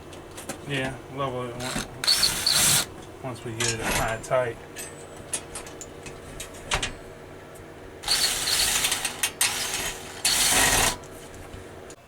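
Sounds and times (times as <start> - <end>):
rapid ratchet clicking: 1.6 - 2.9, 8.0 - 11.0.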